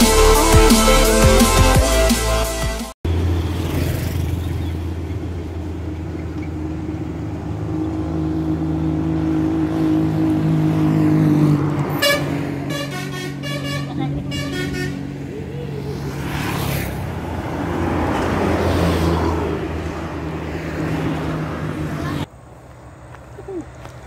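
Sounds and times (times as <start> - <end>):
bus engine passing: 3.0 - 24.0
horn blasts: 11.9 - 15.1.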